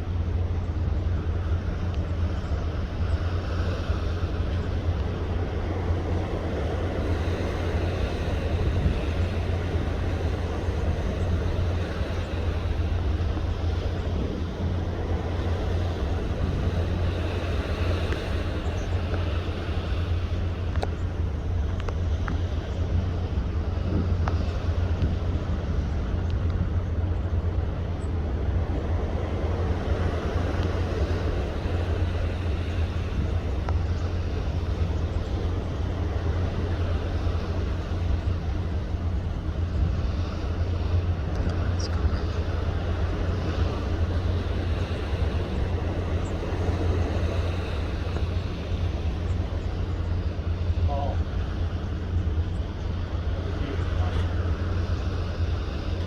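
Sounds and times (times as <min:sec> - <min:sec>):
ship rumbling at sea: 0:00.0 - 0:56.0
faint clicks: 0:20.7 - 0:21.1, 0:21.7 - 0:22.4, 0:41.3 - 0:42.4.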